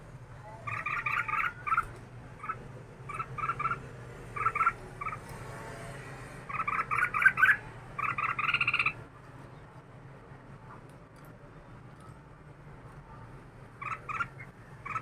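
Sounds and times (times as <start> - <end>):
bird chattering song: 0.7 - 3.8, 4.4 - 5.2, 6.5 - 9.0, 13.8 - 15.0.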